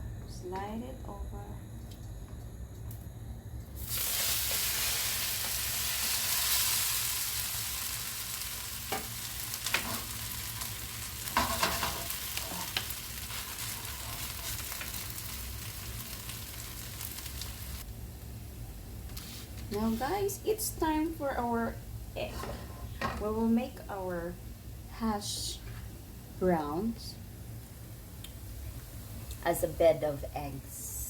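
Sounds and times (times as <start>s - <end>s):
hash brown sizzling in oil: 3.8s - 18.3s.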